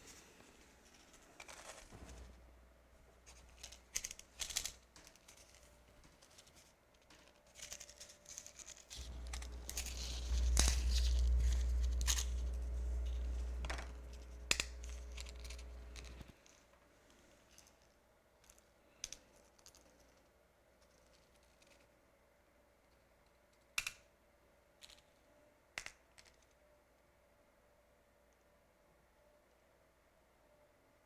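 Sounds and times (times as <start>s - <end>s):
low steady hum: 0.0s - 6.3s, 8.9s - 16.6s
material rustling and crinkling: 0.0s - 16.6s.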